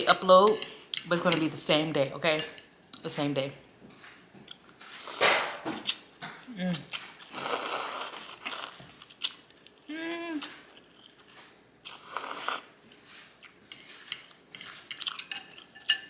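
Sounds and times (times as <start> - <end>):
noodle slurping: 7.3 - 8.8
person humming: 9.9 - 10.5.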